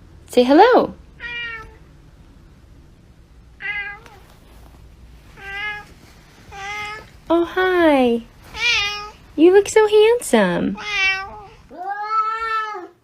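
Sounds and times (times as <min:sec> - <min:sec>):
cat meowing: 0:01.2 - 0:01.8, 0:03.6 - 0:04.3, 0:05.4 - 0:05.9, 0:06.5 - 0:07.1, 0:08.5 - 0:09.2, 0:10.8 - 0:13.0.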